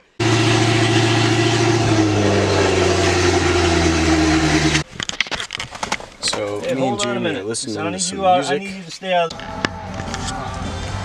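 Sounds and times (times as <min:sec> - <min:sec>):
engine running steadily: 0:00.1 - 0:04.8.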